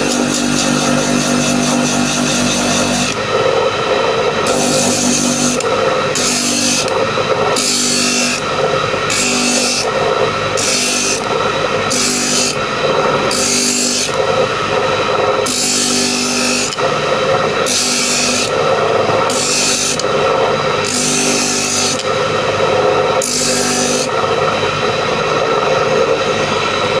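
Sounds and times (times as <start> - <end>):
tool rasping into wood: 0.0 - 3.2, 4.4 - 7.0, 7.6 - 8.5, 9.1 - 10.0, 10.6 - 11.3, 13.2 - 14.3, 15.4 - 16.9, 17.6 - 22.2, 23.2 - 24.1
power tool motor hum: 0.0 - 24.2.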